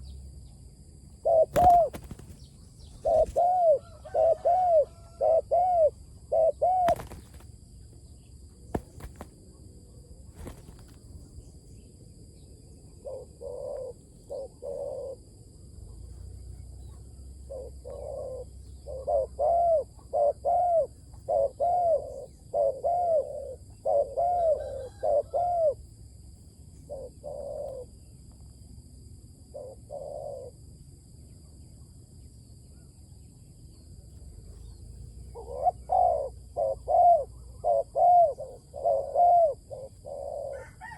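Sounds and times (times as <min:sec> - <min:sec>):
dove cooing: 0:01.2 - 0:07.4, 0:13.0 - 0:15.2, 0:16.1 - 0:25.8, 0:26.9 - 0:27.9, 0:29.5 - 0:30.6, 0:35.2 - 0:40.9.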